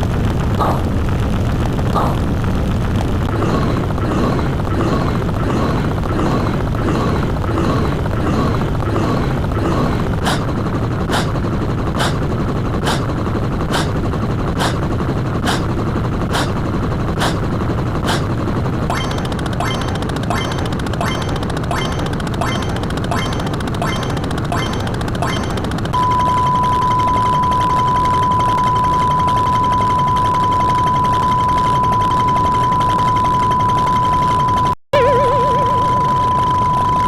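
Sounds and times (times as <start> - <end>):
rumble of booms: 0.0 - 18.8.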